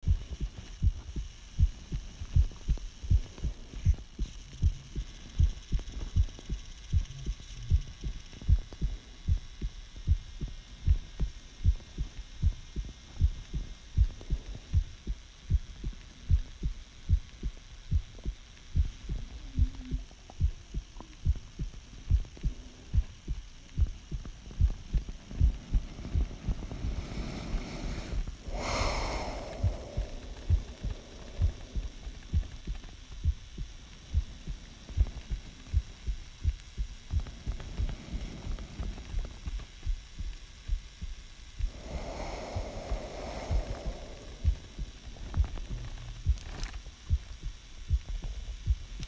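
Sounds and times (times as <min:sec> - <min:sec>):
heartbeat: 0:00.0 - 0:49.0
rushing hiss: 0:25.8 - 0:32.3, 0:41.6 - 0:45.6.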